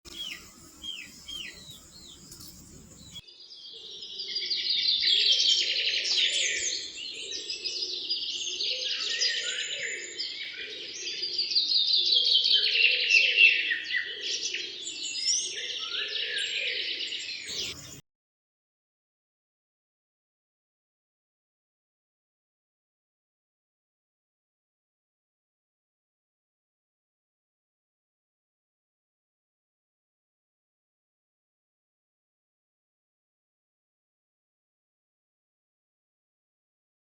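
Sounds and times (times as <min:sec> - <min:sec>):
birds chirping: 0:00.1 - 0:03.2, 0:17.5 - 0:18.0.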